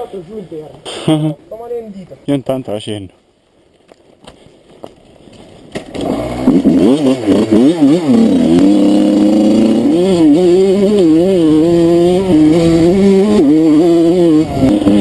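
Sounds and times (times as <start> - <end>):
motorcycle engine revving and idling: 5.8 - 15.0.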